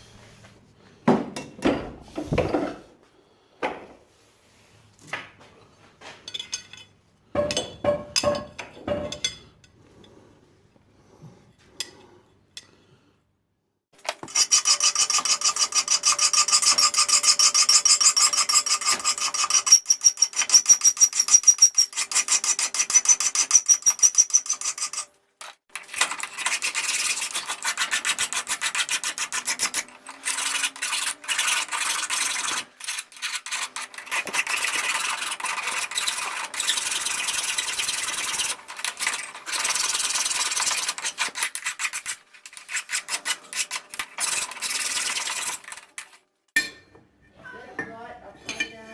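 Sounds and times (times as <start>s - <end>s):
file rasping on steel: 14.2s - 46.2s.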